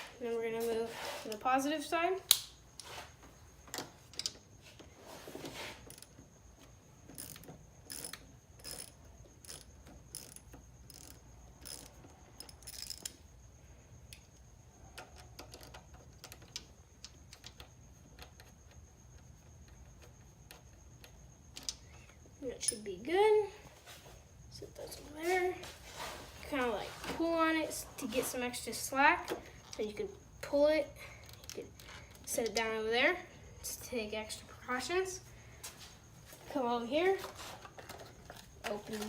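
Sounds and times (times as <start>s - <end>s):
ratchet clicking: 5.8s - 6.2s, 7.0s - 13.2s.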